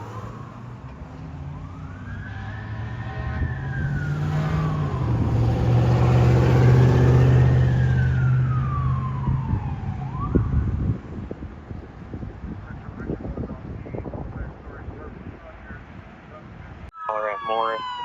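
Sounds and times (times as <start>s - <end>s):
siren wailing: 1.4s - 10.9s, 16.9s - 18.0s
deep air horn blast: 2.2s - 6.7s.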